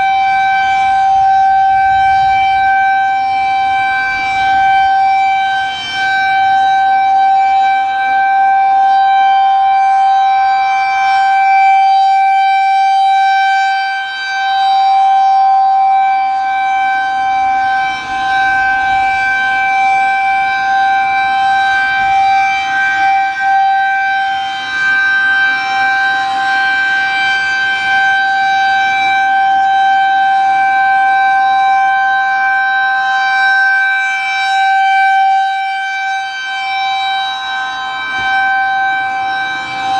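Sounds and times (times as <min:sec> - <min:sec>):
outdoor warning siren steady tone: 0:00.0 - 0:39.9.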